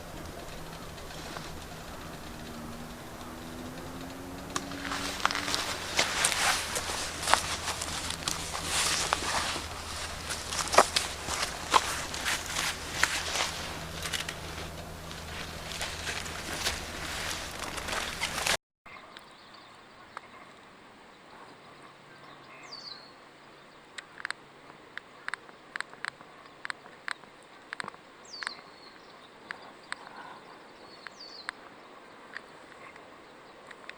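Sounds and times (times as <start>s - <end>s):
bird calls sliding downward: 0.0s - 18.6s
wood fire crackling and popping: 0.0s - 18.6s.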